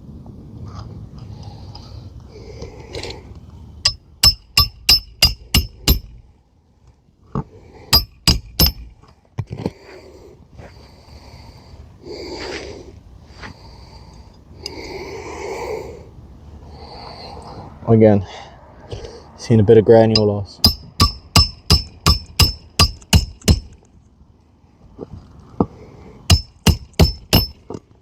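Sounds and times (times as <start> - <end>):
hammer driving nails: 3.9 - 6.1, 7.9 - 8.9, 20.6 - 23.8, 26.3 - 27.8.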